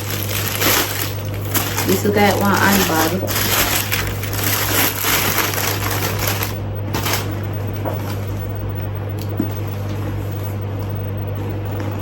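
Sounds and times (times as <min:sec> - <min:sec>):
packaging tearing and rustling: 0:00.0 - 0:07.4
steady low hum: 0:00.0 - 0:12.0.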